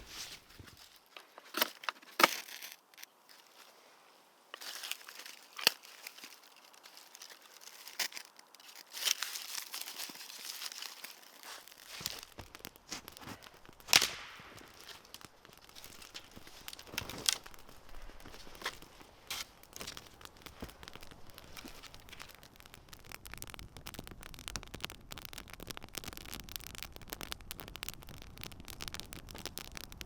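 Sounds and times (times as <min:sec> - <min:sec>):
synthetic fabric crinkling: 0:04.6 - 0:22.5.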